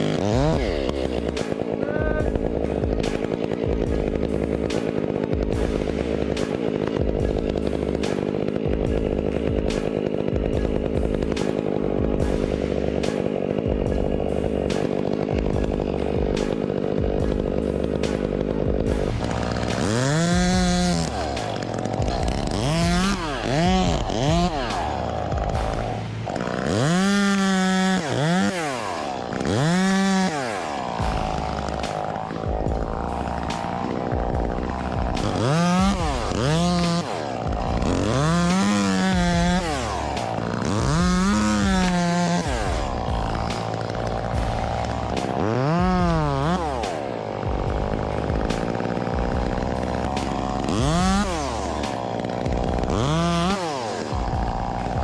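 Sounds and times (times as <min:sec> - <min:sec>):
chainsaw running under load: 0:00.0 - 0:55.0.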